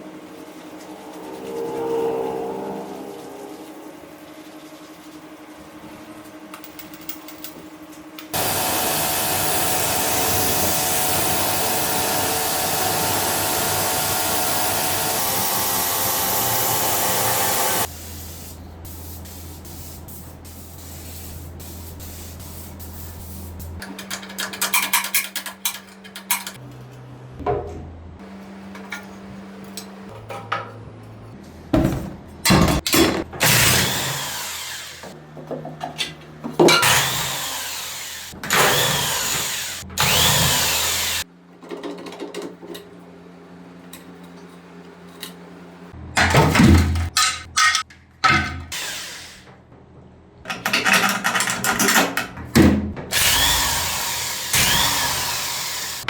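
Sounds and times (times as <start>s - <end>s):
low steady hum: 25.6s - 32.8s.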